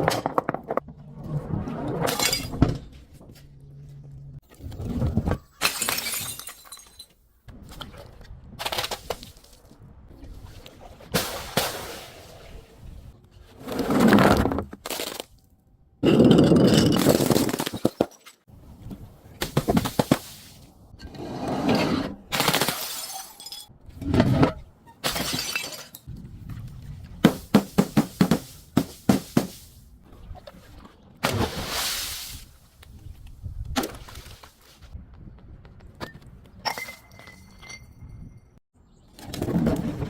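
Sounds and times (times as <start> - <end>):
glass bottles shattering: 5.5 - 7.2, 22.5 - 23.7, 25.0 - 26.1.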